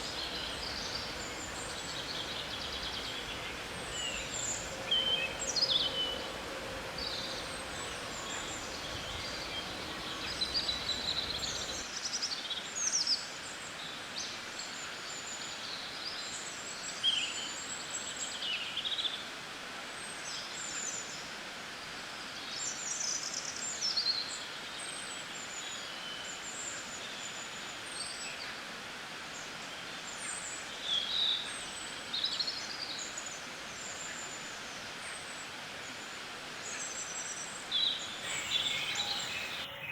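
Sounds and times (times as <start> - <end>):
songbirds chirping and trilling: 0.0 - 11.8, 38.2 - 39.9
steady background hiss: 0.0 - 11.8, 36.7 - 39.9.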